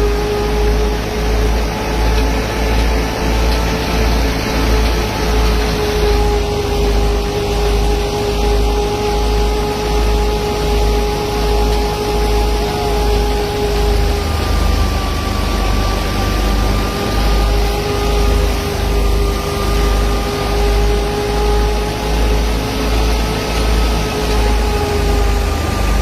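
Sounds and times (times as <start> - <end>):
low throbbing rumble: 0.0 - 26.0
thresher high whine: 0.0 - 26.0.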